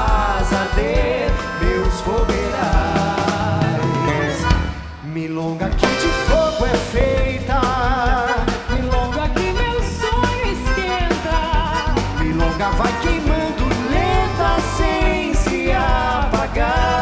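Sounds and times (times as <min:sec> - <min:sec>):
live band playing: 0:00.0 - 0:17.0.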